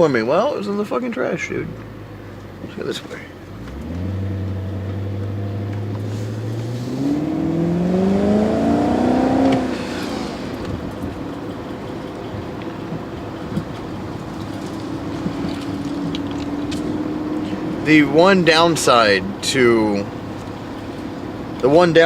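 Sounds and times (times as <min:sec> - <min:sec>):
car engine accelerating: 0:00.4 - 0:22.0.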